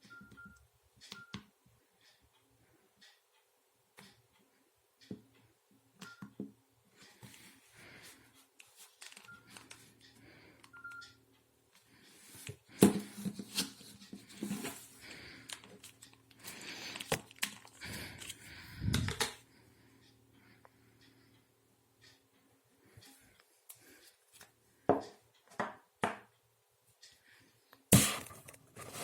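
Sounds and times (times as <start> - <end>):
phone keypad beeps: 0.0 - 1.4, 6.0 - 6.3, 10.7 - 11.2.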